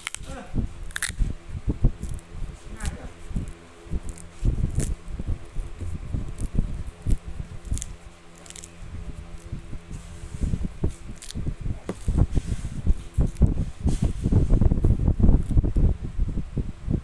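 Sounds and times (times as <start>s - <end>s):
squishy chewing with crunches: 0.0s - 13.6s
low steady hum: 0.0s - 17.0s.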